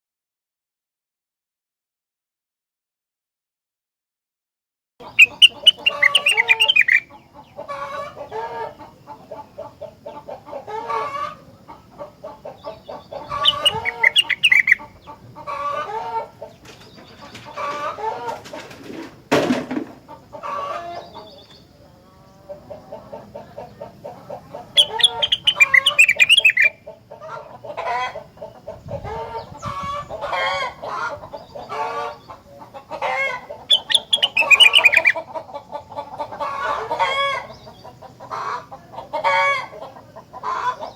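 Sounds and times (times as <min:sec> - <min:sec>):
songbird warbling: 0:05.0 - 0:17.8, 0:20.3 - 0:40.9
sharp knock: 0:19.3 - 0:20.0.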